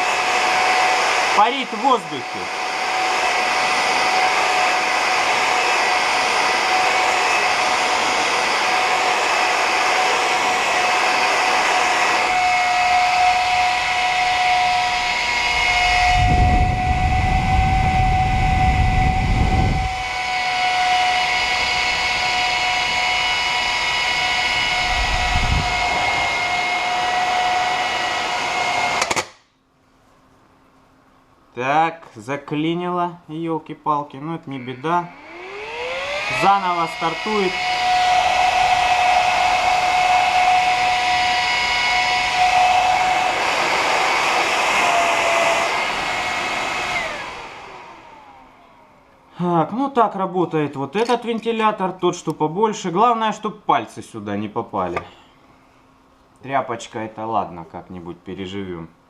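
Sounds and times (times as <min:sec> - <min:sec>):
fan air rush with whine: 0:00.0 - 0:59.0
deeper fan rumble: 0:14.8 - 0:20.1, 0:24.5 - 0:26.7.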